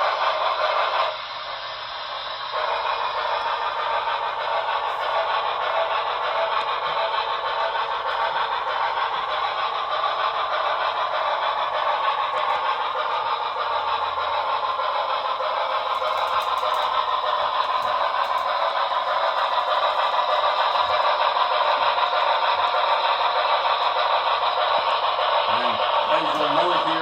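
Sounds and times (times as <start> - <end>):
model train locomotive rushing: 0.0 - 27.0
light rail clatter: 4.4 - 25.4.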